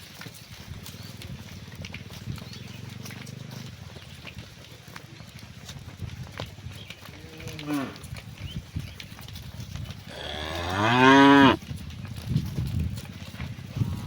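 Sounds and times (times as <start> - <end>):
cows mooing: 7.1 - 8.2, 10.1 - 11.6.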